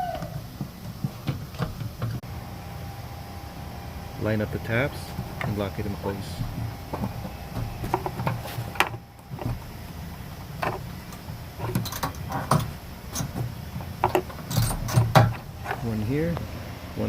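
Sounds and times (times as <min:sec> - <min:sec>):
steady low hum: 0:00.0 - 0:17.0
clicks and knocks of parts: 0:06.4 - 0:15.9.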